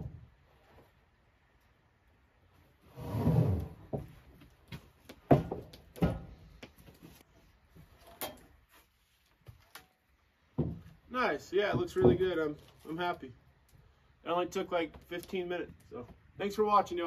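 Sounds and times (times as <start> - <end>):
irregular knocks and thumps: 3.8 - 4.2, 4.8 - 6.8, 10.5 - 12.5.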